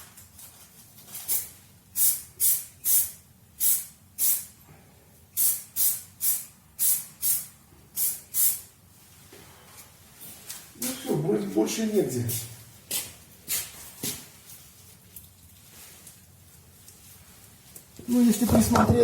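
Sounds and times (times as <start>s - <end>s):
short hissing spray puffs: 1.2s - 4.6s, 5.3s - 8.7s.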